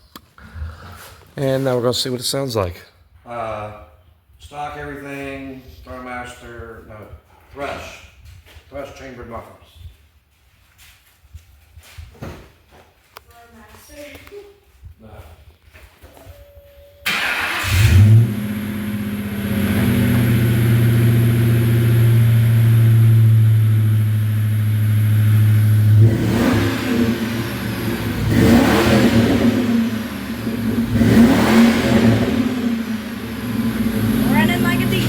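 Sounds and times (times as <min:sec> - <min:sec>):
car engine idling and revving: 0:17.1 - 0:35.0.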